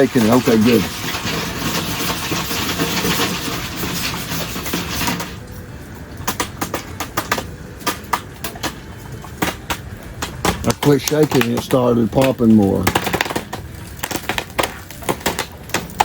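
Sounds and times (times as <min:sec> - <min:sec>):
foil pan scraping and rattling: 0:00.0 - 0:05.4, 0:10.6 - 0:16.0
popcorn popping: 0:00.0 - 0:05.4, 0:06.2 - 0:16.0.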